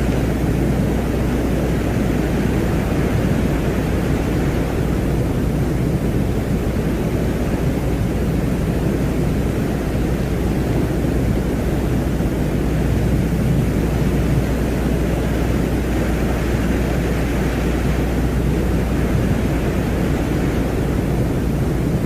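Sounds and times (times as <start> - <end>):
deep rushing drone: 0.0 - 22.0.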